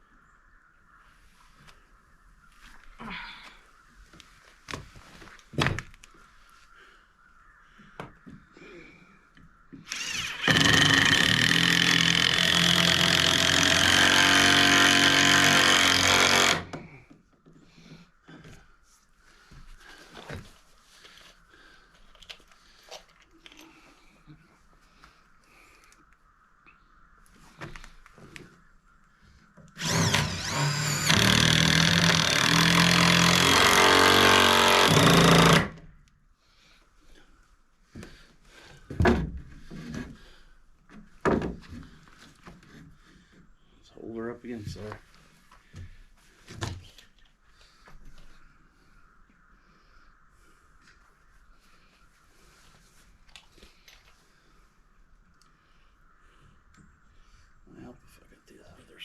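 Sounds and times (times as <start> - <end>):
impact driver driving screw: 9.9 - 16.7, 29.8 - 35.8.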